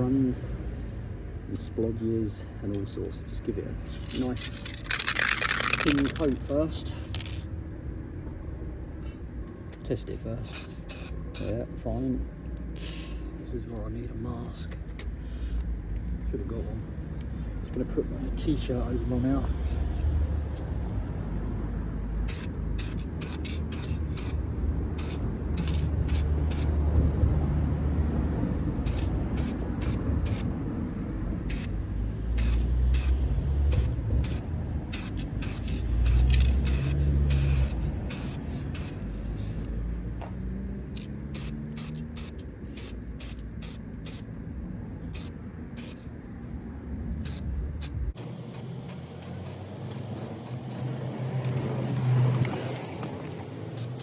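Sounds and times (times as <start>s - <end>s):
aerosol spray can hissing: 10.5s - 11.6s, 22.2s - 24.4s, 25.0s - 26.7s, 28.9s - 30.5s, 31.5s - 31.8s, 32.4s - 39.6s, 41.0s - 44.2s, 45.2s - 46.1s, 47.3s - 52.1s, 53.4s - 54.0s.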